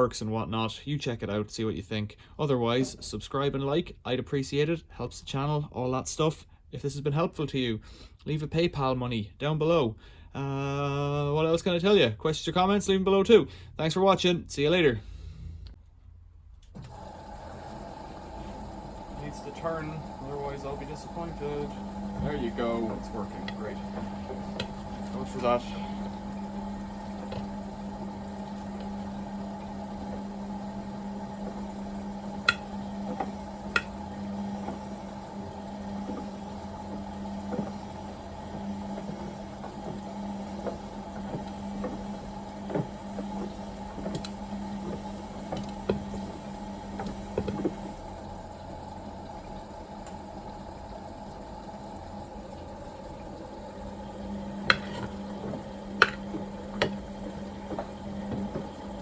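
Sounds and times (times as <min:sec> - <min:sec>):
washing machine running: 0:16.8 - 0:59.0.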